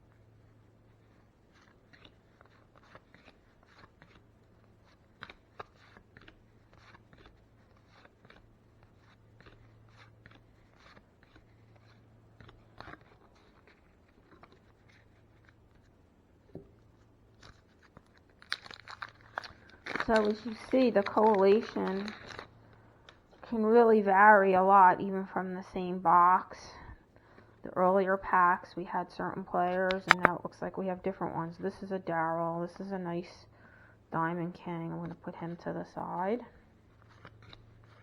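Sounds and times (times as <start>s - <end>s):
cards and wrapper crinkling: 1.5s - 15.9s, 17.4s - 22.5s, 29.9s - 30.3s, 36.9s - 38.0s.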